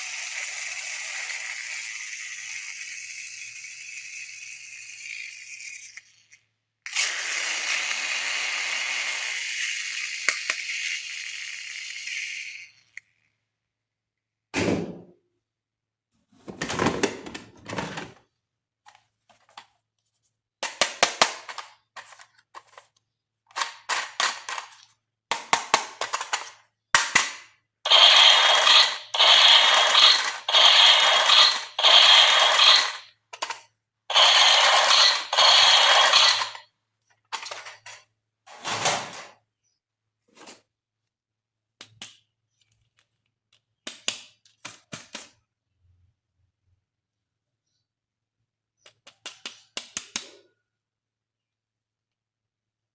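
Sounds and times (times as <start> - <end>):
plastic toys clicking and scraping: 0.1 - 13.2, 20.6 - 36.6, 37.2 - 38.1.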